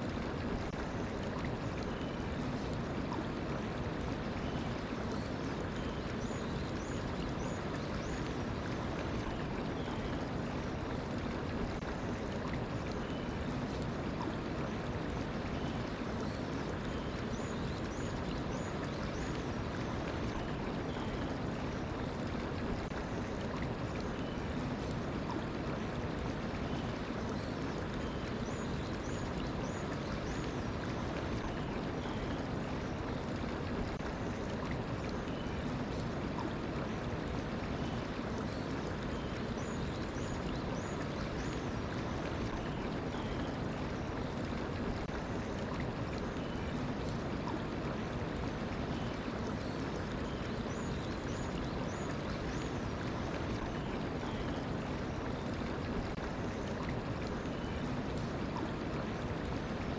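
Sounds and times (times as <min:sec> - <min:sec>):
stream flowing over rocks: 0:00.0 - 0:59.9.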